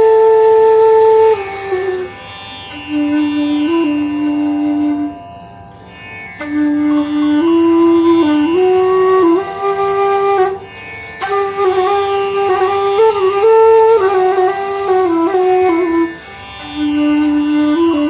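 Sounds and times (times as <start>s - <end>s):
bamboo flute melody: 0.0s - 18.0s
tampura drone: 0.0s - 18.0s.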